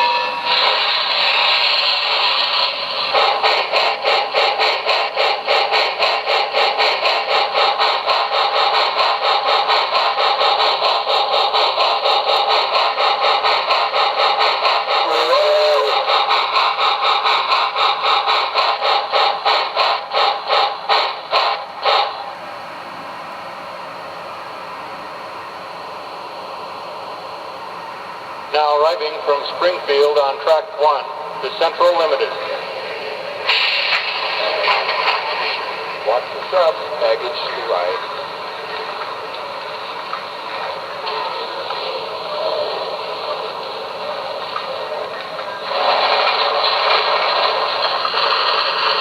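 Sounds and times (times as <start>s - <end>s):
short tone: 0.0s - 0.6s
steady steam hiss: 0.0s - 49.0s
steam locomotive chuffing: 0.0s - 49.0s.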